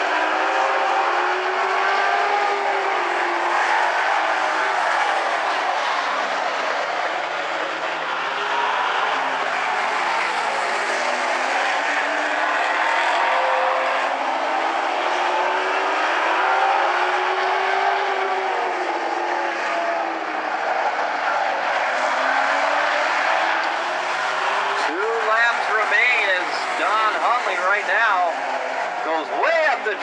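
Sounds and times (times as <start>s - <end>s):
race car engines: 0.0s - 30.0s.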